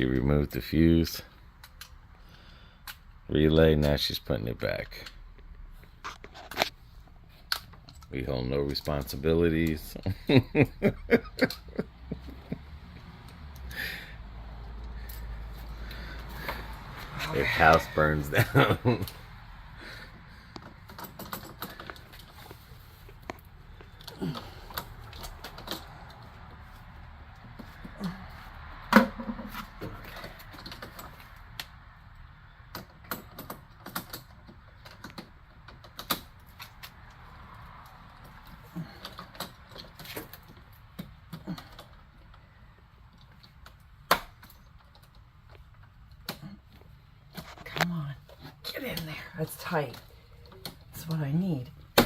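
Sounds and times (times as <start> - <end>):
hand tools clicking and tapping: 20.1 - 26.6, 32.6 - 47.4.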